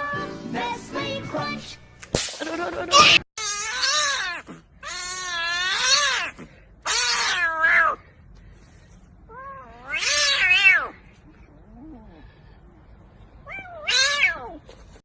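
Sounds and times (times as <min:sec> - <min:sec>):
cat meowing: 0:03.4 - 0:08.0, 0:09.3 - 0:11.0, 0:13.4 - 0:14.7.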